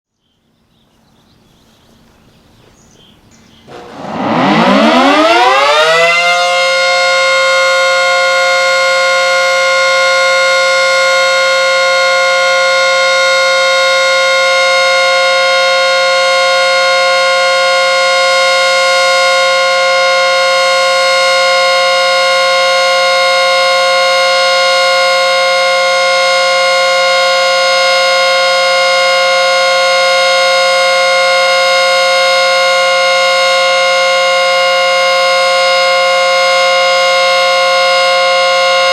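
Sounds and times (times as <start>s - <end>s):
warning siren winding up: 3.7s - 38.9s.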